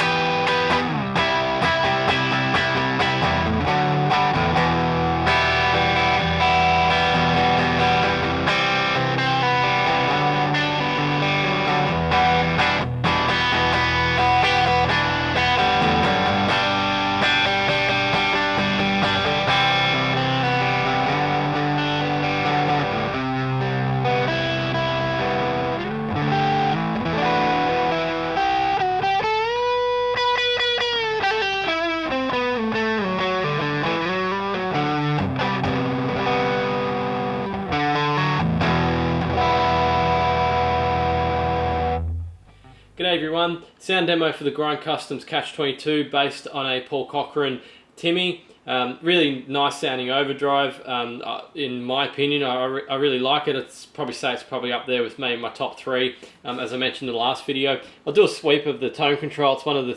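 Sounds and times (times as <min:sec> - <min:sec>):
overdriven electric guitar chords: 0:00.0 - 0:43.0.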